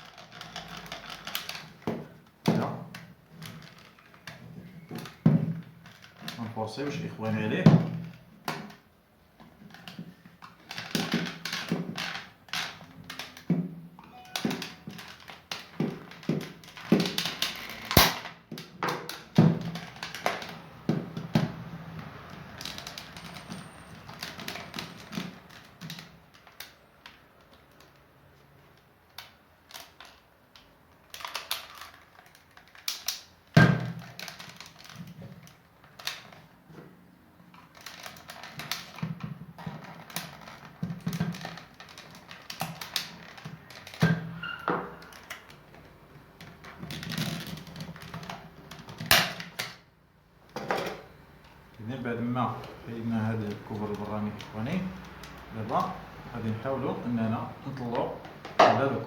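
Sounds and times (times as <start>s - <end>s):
plastic clicks and scrapes: 0.0s - 1.9s, 28.7s - 33.3s, 37.5s - 44.1s.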